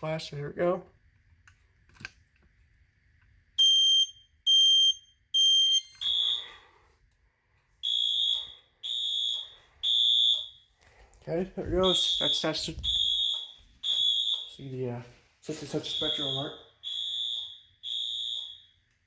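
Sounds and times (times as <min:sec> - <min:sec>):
fire alarm horn pulses: 0:03.6 - 0:06.6, 0:07.8 - 0:10.7, 0:11.7 - 0:14.8, 0:15.6 - 0:18.8
smoke alarm beeps: 0:03.6 - 0:10.8, 0:11.6 - 0:14.8, 0:15.5 - 0:19.0.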